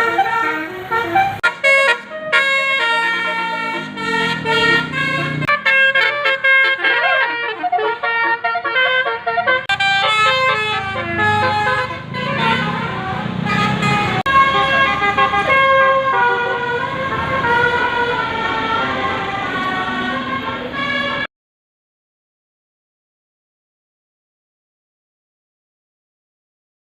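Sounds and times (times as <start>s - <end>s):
musical air horn playing a tune: 0.0s - 21.3s.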